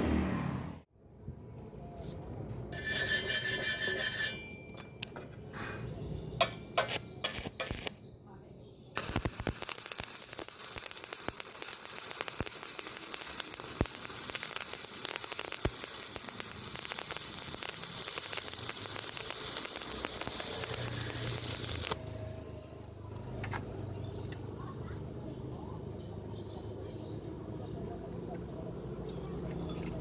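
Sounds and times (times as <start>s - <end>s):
sharp welding pops: 6.4s - 8.0s, 9.0s - 22.0s
welding arc crackling: 6.4s - 8.0s, 9.0s - 22.0s.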